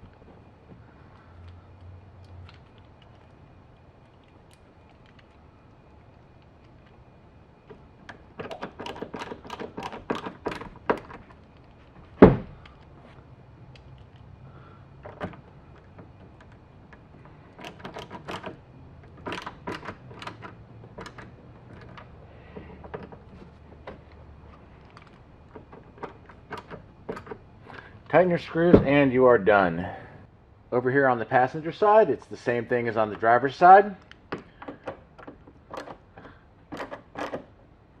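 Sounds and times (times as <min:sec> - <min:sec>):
small clicks and knocks: 0:07.6 - 0:14.4, 0:15.0 - 0:27.8, 0:34.0 - 0:37.6
loud thunk: 0:12.2 - 0:12.6.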